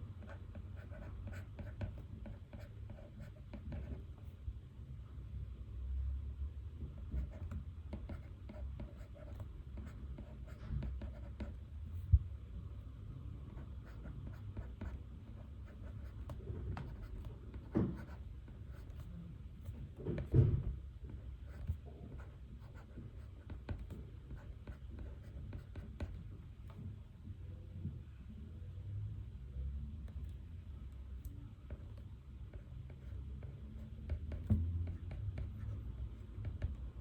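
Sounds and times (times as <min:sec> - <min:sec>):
pen scratching on paper: 0:00.2 - 0:04.1, 0:07.1 - 0:11.6, 0:13.5 - 0:20.4, 0:21.1 - 0:26.2, 0:31.7 - 0:36.9.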